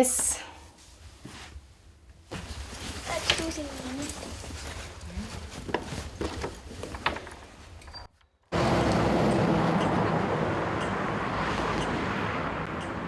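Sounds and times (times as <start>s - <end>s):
objects being handled: 2.2s - 8.2s
vehicle noise with low hum: 8.5s - 13.0s.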